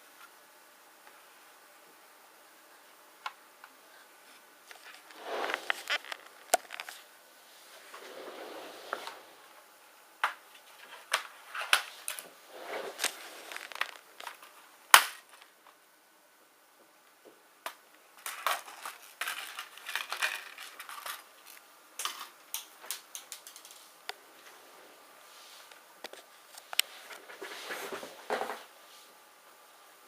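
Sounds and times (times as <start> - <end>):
hard plastic cracking and snapping: 13.0 - 15.5.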